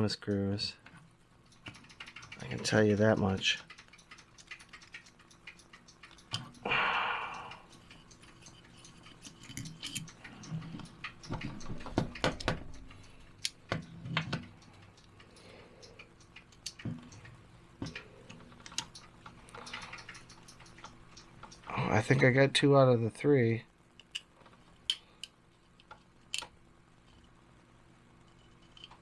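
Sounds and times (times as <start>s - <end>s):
faint steady hum: 0.0s - 29.0s
small metal parts clicking: 0.3s - 6.6s, 7.6s - 21.7s.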